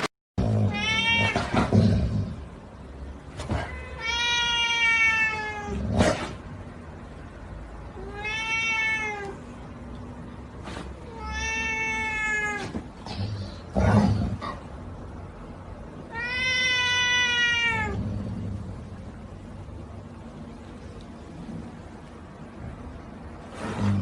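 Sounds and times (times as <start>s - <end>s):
cat meowing: 0.6s - 1.7s, 3.5s - 5.8s, 8.0s - 9.5s, 11.0s - 12.8s, 16.1s - 18.0s.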